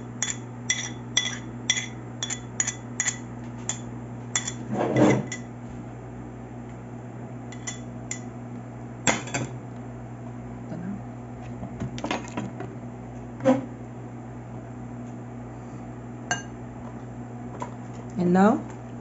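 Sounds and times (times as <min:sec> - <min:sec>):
spoon clinking against bowl: 0:00.2 - 0:03.8
spoon scraping: 0:04.4 - 0:05.5.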